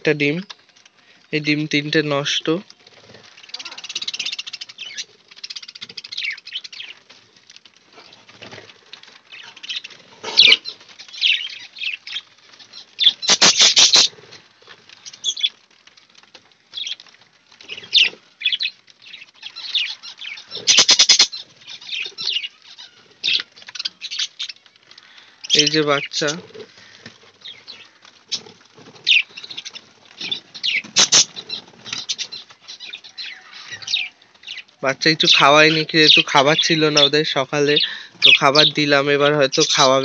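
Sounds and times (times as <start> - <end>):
rapid wing flapping: 2.9 - 21.3, 26.6 - 32.6
budgerigars chirping: 9.4 - 14.2, 17.7 - 24.6, 29.0 - 40.0.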